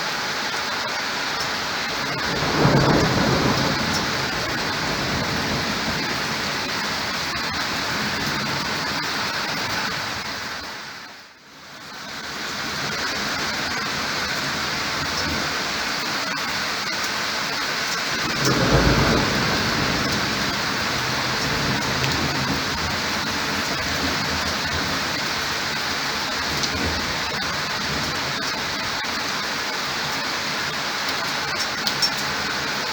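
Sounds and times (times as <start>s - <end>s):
heavy rain pouring: 0.0s - 32.9s
low rumble of thunder: 1.7s - 9.0s, 18.2s - 28.4s.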